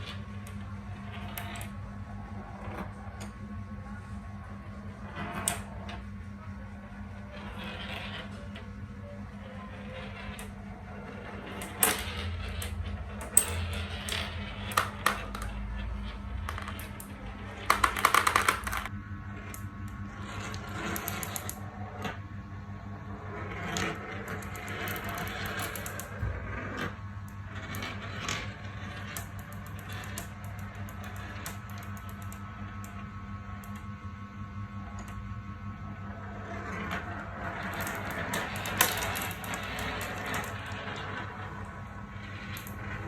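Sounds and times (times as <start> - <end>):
marbles rolling and clicking: 9.3 - 19.0, 19.6 - 22.1, 23.5 - 33.0, 36.6 - 43.0.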